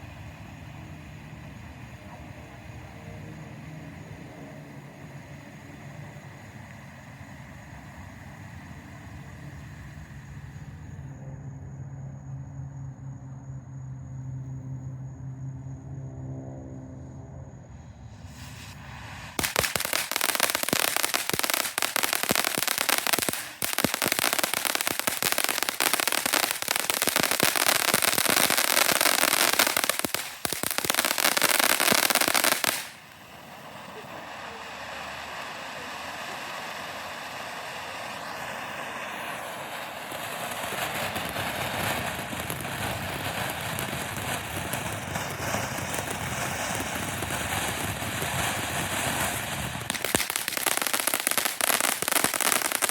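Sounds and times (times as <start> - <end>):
firework rapid crackling: 18.1 - 52.9
hissing spray of sparks: 18.2 - 33.3, 37.9 - 52.9.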